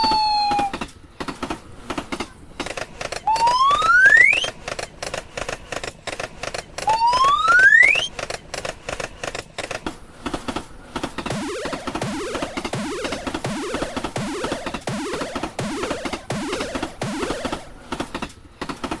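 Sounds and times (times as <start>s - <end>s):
fast irregular clicking clatter: 0.8s - 19.0s
rising whistle-like glides: 3.3s - 4.5s, 6.9s - 8.1s.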